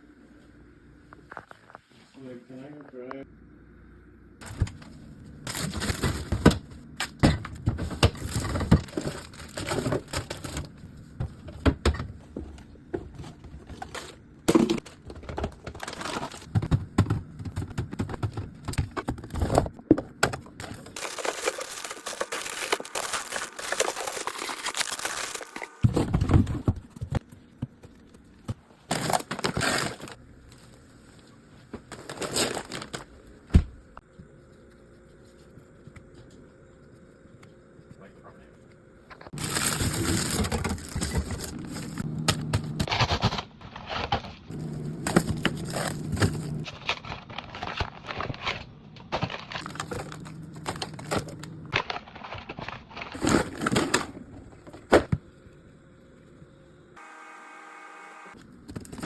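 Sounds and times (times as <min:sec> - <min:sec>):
packaging crinkling and rustling: 0:04.4 - 0:27.2, 0:28.8 - 0:33.3, 0:39.3 - 0:55.1
containers clattering on shelves: 0:05.6 - 0:21.4.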